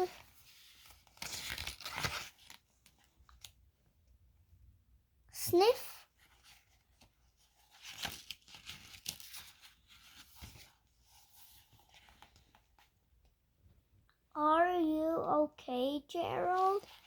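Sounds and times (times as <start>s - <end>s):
book pages rustling: 0.0s - 3.6s, 6.1s - 13.3s, 16.4s - 17.0s.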